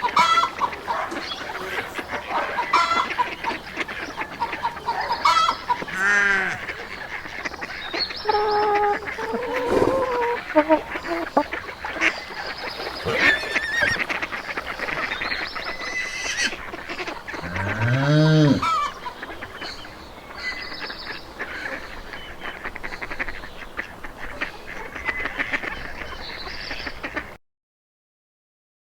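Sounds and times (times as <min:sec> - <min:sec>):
poultry clucking: 0:00.0 - 0:27.3
cow mooing: 0:08.3 - 0:10.7, 0:13.0 - 0:14.0, 0:17.4 - 0:18.8.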